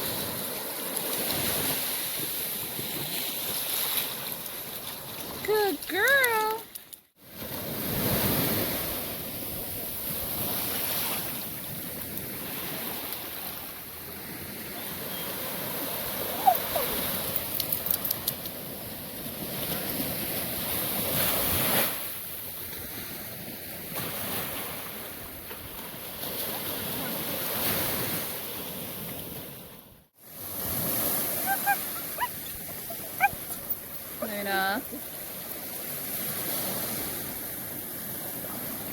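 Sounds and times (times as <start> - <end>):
ocean surf on beach: 0.0 - 6.5, 7.2 - 38.9
wind: 0.0 - 38.9
small clicks: 6.6 - 7.0
ocean surf washing ashore: 30.2 - 38.9
brief gliding call: 31.2 - 34.3.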